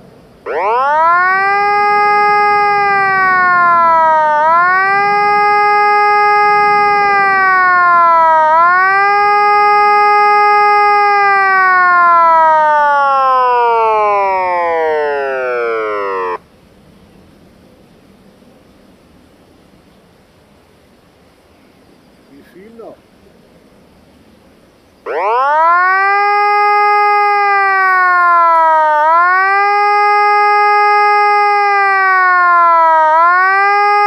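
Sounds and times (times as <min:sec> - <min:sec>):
electronic warning siren: 0:00.4 - 0:16.4, 0:25.1 - 0:34.0.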